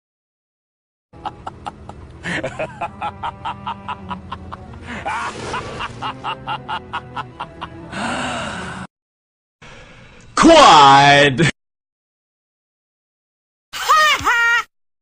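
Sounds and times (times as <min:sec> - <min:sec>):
loud noisy burst: 0:05.3 - 0:06.3.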